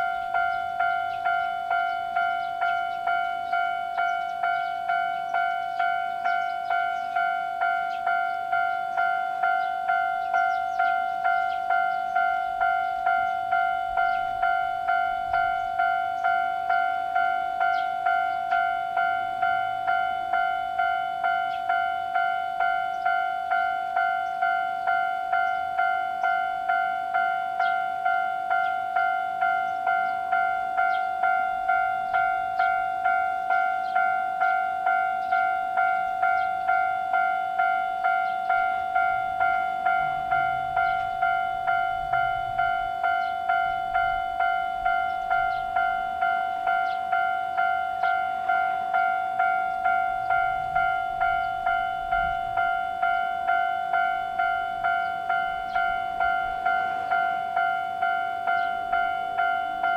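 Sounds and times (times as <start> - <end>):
level crossing warning bell: 0.0 - 59.9.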